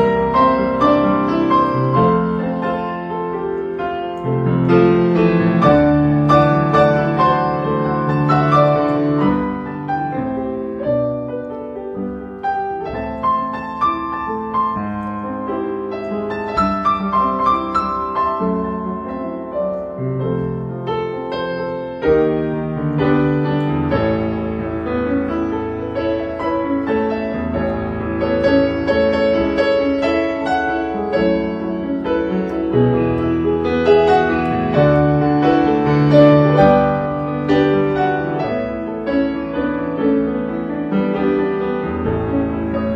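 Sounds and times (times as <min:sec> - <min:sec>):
gentle piano music: 0:00.0 - 0:42.9.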